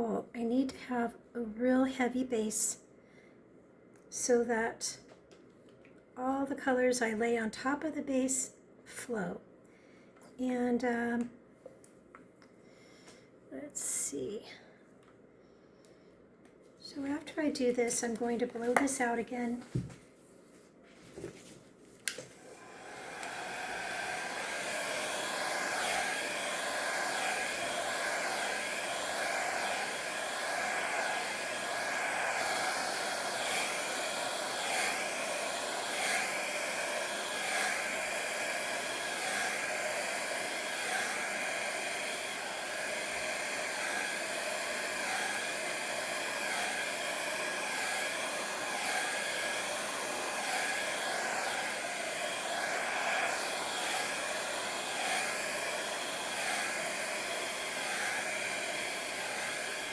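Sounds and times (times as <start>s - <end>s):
hair dryer blowing: 17.0s - 19.9s, 22.0s - 59.9s
hair dryer switch click: 23.1s - 24.1s.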